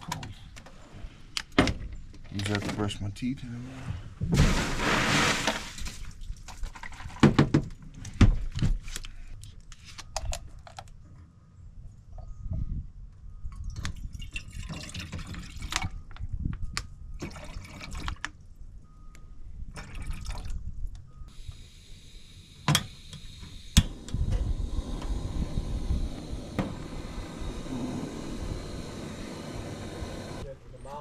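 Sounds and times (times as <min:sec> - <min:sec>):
water splashing and dripping: 0:04.4 - 0:07.1.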